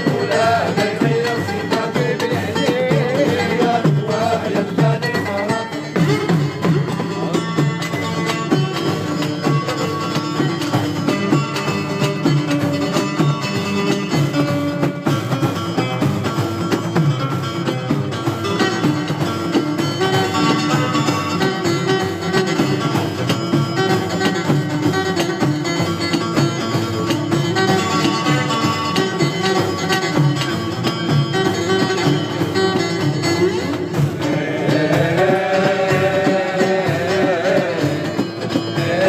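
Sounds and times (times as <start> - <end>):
plucked string instrumental music: 0.0 - 39.0.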